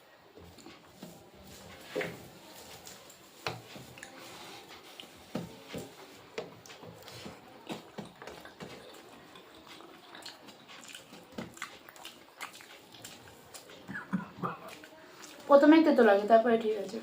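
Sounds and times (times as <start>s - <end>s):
chewing and lip smacks: 6.4s - 15.5s.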